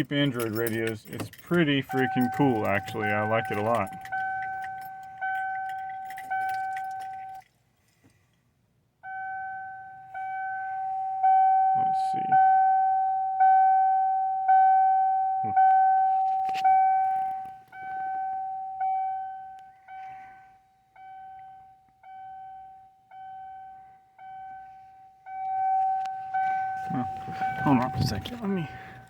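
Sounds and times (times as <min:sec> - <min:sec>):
car warning chime dinging: 0:00.0 - 0:07.5, 0:09.0 - 0:29.0.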